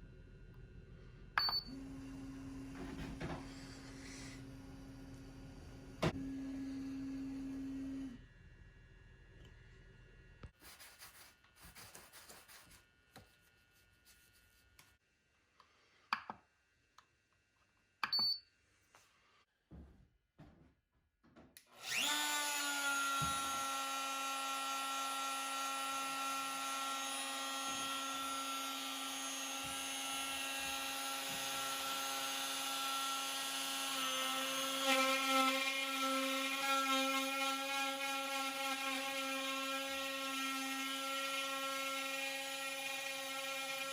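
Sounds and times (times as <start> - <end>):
router motor high whine: 21.7 - 43.9.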